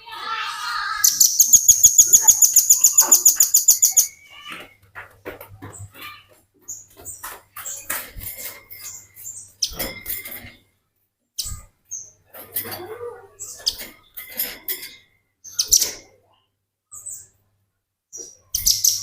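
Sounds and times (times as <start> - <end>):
bird chattering song: 1.0 - 4.6, 18.2 - 19.0.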